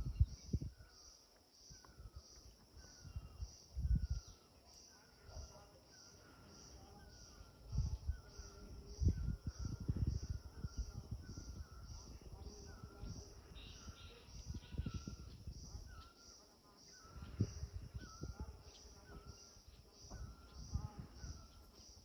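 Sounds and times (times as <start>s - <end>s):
insects chirping: 0.0s - 22.0s
short bird calls: 11.6s - 22.0s.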